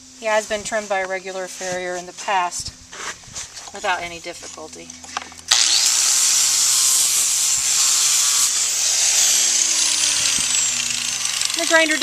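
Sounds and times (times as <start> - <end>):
high motor whine: 4.9 - 12.0
grinder rasping on hoof: 5.5 - 12.0.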